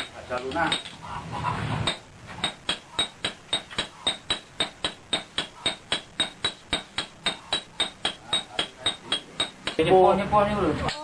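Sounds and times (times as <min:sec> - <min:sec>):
hammer striking iron on anvil: 0:00.0 - 0:01.0, 0:01.8 - 0:10.0.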